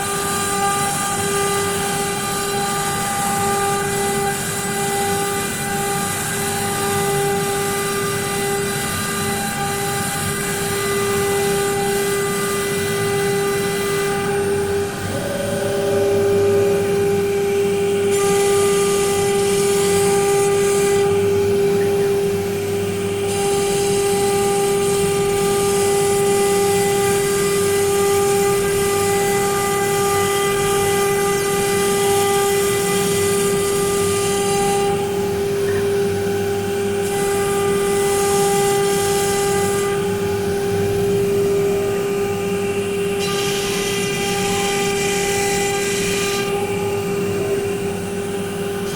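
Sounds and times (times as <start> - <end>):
machine spindle whine: 0.0 - 48.9.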